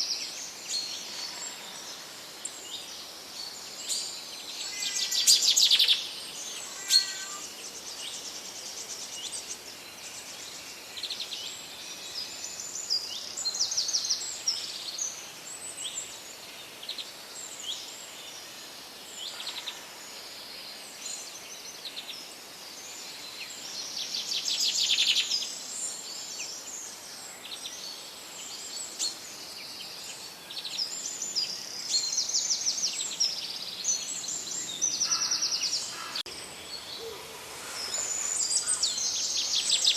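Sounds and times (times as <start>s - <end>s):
songbirds singing and calling: 0.0s - 39.9s
loud rapid bird trill: 6.6s - 7.5s
stream running: 36.0s - 39.9s.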